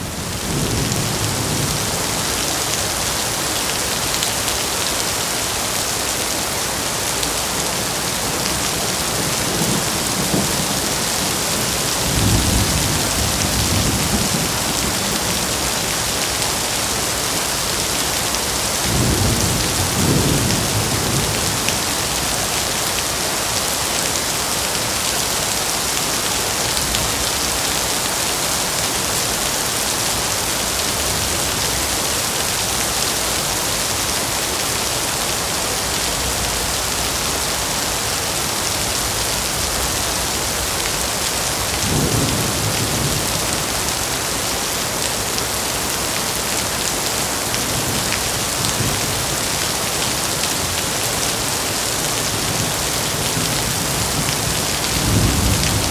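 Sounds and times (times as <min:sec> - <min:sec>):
heavy rain falling: 0:00.0 - 0:55.9
low rumble of thunder: 0:52.6 - 0:55.9.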